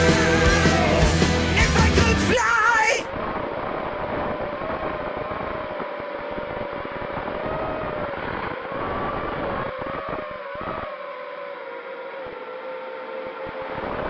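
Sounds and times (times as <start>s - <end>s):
wind and propeller rumble: 3.0s - 14.0s
quadcopter motors whining: 3.1s - 14.0s.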